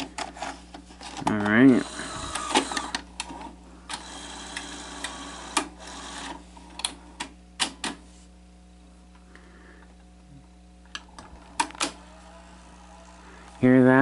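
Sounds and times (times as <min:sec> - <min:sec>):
tape mechanism clicks and clunks: 0:00.0 - 0:08.0, 0:10.9 - 0:13.6
low steady whir: 0:00.0 - 0:14.0.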